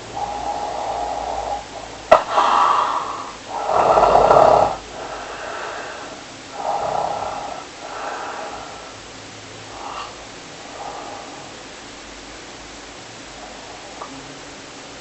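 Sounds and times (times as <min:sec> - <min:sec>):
person snoring: 0:00.0 - 0:11.7, 0:13.4 - 0:14.2.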